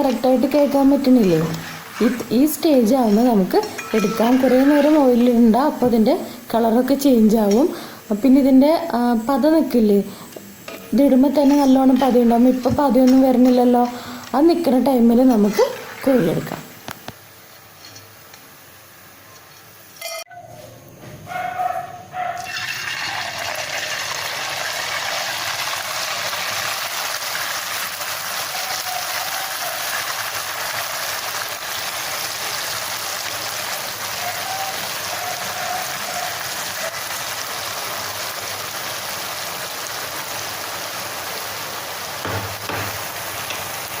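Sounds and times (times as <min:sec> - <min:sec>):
oil bubbling and sizzling: 0:00.0 - 0:20.0, 0:22.4 - 0:44.0.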